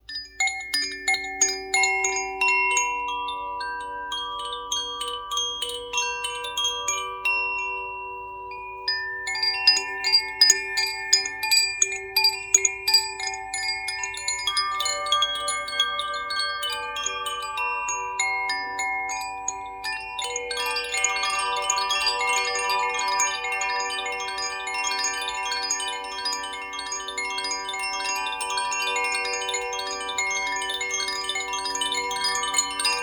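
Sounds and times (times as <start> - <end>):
chimes struck and ringing: 13.2 - 33.0.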